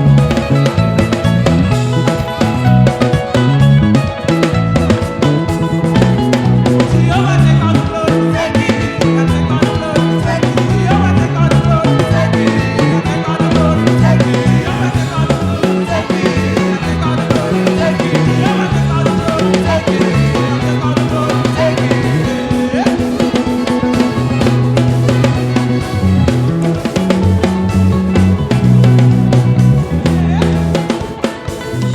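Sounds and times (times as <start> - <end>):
live band playing: 0.0 - 31.9
person singing: 6.0 - 27.0, 30.0 - 31.8.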